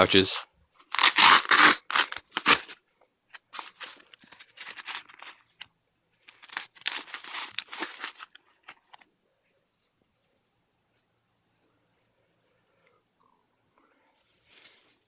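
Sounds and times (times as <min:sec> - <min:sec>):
nylon fabric scraping and crinkling: 0:01.0 - 0:02.6.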